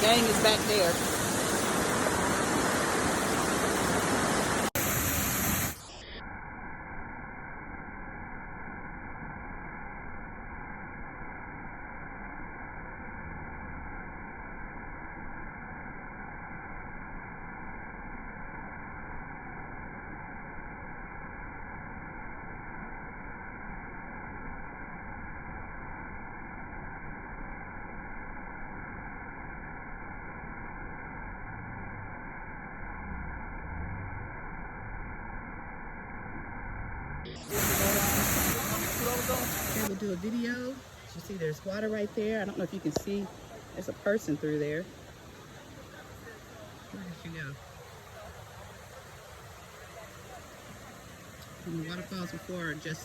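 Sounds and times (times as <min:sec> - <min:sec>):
waterfall rushing: 0:00.0 - 0:06.0, 0:37.3 - 0:53.0.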